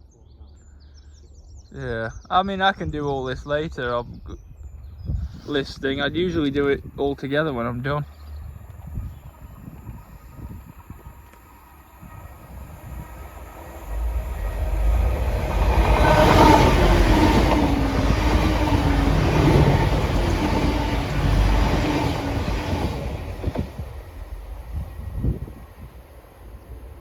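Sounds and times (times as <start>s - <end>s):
train passing: 5.6s - 27.0s.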